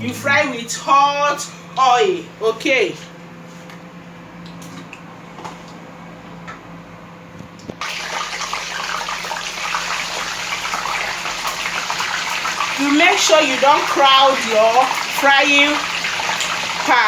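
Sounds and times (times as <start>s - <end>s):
fish sizzling in hot oil: 7.8s - 17.0s.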